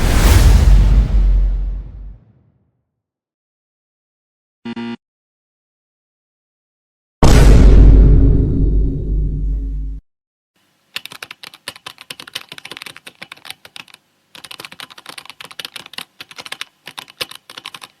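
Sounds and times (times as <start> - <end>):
deep sound effect tail: 0.0 - 2.5, 7.2 - 10.0.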